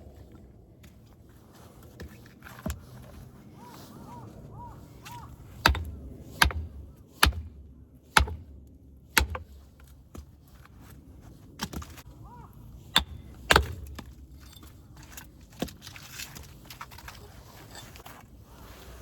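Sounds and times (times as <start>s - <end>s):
axe chopping wood: 5.0s - 10.4s, 12.9s - 14.2s.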